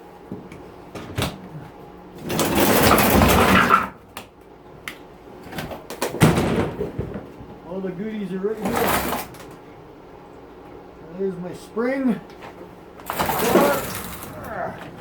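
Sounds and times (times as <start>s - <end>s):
knocks and clatter of parts: 2.2s - 3.8s, 5.6s - 7.6s, 13.0s - 15.0s
loud scraping rattle: 2.3s - 3.9s, 13.1s - 14.4s.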